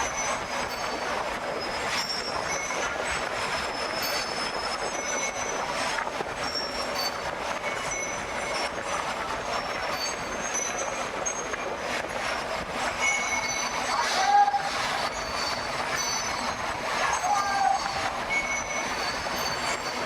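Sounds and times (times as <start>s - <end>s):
metal squealing on metal: 13.1s - 20.0s.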